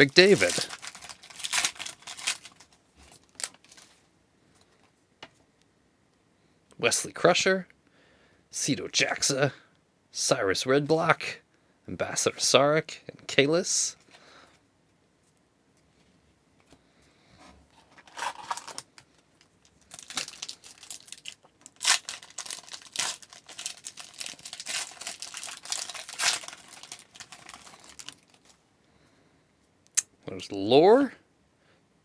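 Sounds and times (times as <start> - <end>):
wrapper crinkling and tearing: 0.0 - 4.0, 17.9 - 28.6.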